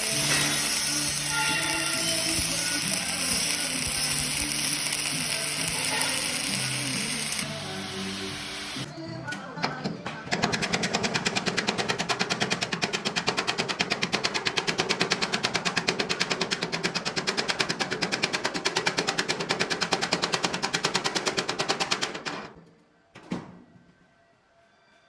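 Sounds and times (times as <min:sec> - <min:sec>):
arc welding crackling: 0:00.0 - 0:08.9.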